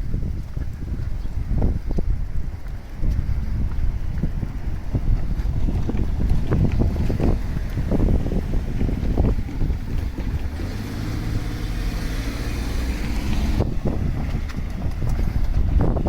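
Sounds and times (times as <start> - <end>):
wind buffeting microphone: 0.0 - 16.0
vehicle passing: 4.6 - 16.0.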